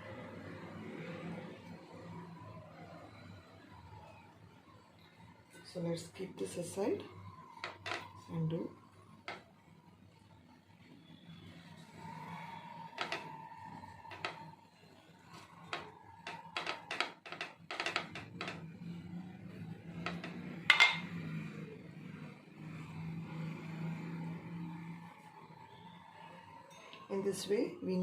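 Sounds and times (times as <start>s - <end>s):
cutter knocking on dishes: 13.0s - 13.3s, 15.7s - 18.6s, 20.1s - 21.1s.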